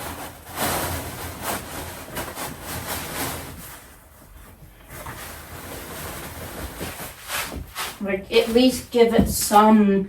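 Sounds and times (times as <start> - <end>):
rustling and handling noises: 0.0 - 9.8.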